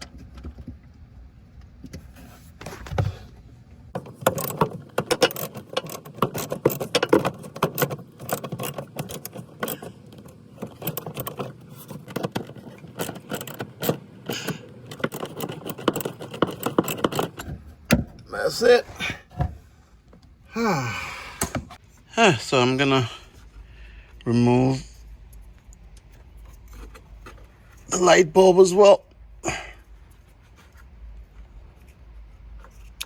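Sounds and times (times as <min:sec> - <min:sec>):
plastic parts clicking and rattling: 0:03.9 - 0:18.3, 0:25.1 - 0:27.9.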